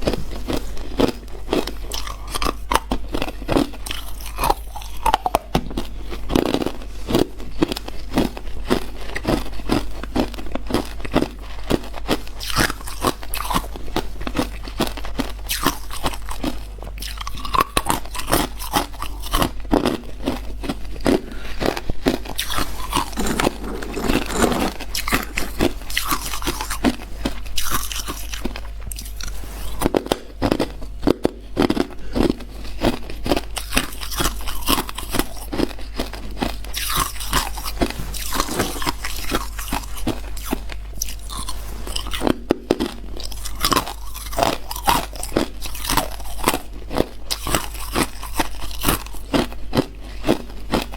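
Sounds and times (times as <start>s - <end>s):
ice being chewed: 0.0s - 50.9s.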